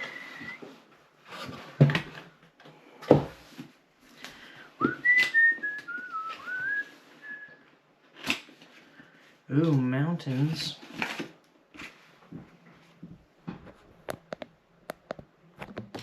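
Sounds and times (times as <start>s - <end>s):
wavering high whistle: 0.0s - 0.7s, 4.8s - 7.6s.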